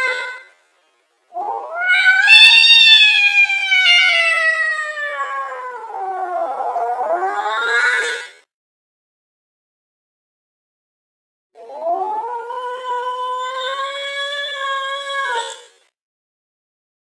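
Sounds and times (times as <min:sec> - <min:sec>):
angry cat yowling: 0:01.4 - 0:08.4, 0:11.6 - 0:15.8.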